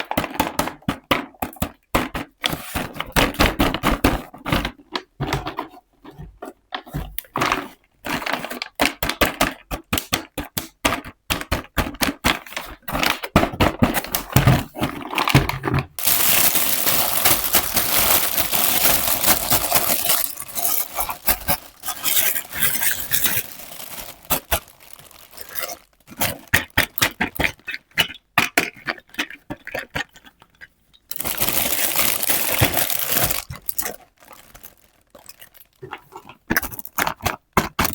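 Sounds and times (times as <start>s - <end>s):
packaging crinkling and tearing: 14.9s - 27.6s, 31.1s - 37.9s.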